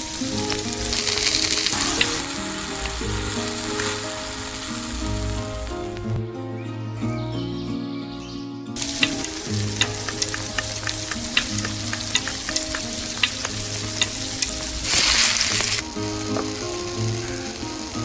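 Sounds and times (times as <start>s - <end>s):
food sizzling in a pan: 0.0s - 6.1s, 8.8s - 18.0s
utensil tapping and scraping pan: 8.8s - 16.6s.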